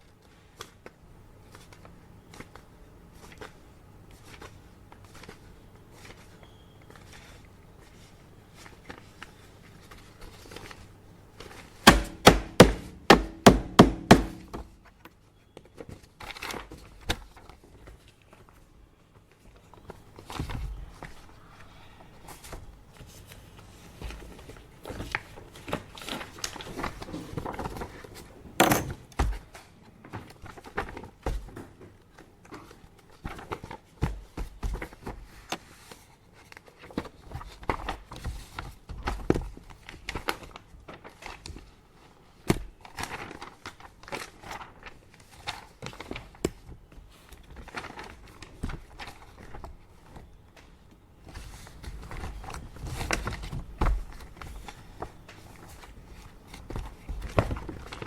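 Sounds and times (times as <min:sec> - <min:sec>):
paper rustling: 0:06.9 - 0:14.7, 0:42.8 - 0:50.2
sharp knocks on desk: 0:11.9 - 0:14.6
air purifier humming: 0:11.9 - 0:14.8.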